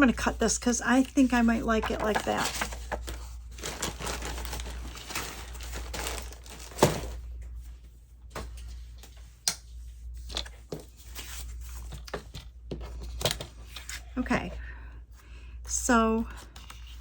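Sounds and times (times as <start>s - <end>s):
paper rustling and crinkling: 1.0s - 7.6s.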